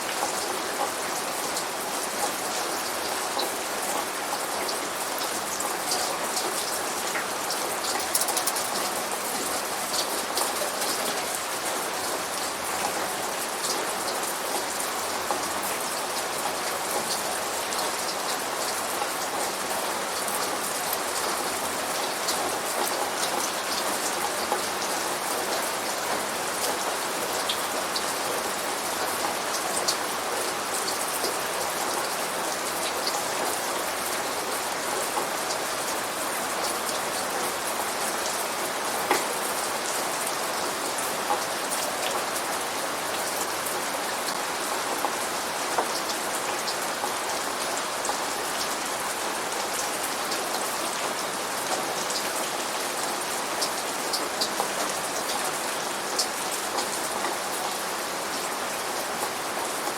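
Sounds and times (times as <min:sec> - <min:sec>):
rain on a hard surface: 0:00.0 - 0:59.9.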